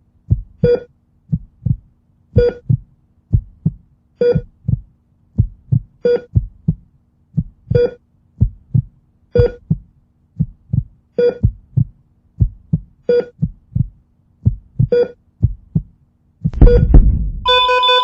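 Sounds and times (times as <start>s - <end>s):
heartbeat thumps: 0.2s - 17.7s
heart monitor beep: 0.3s - 1.8s, 2.4s - 2.8s, 3.6s - 4.8s, 5.4s - 6.7s, 7.6s - 9.8s, 10.7s - 13.9s, 14.5s - 15.8s, 16.6s - 18.0s.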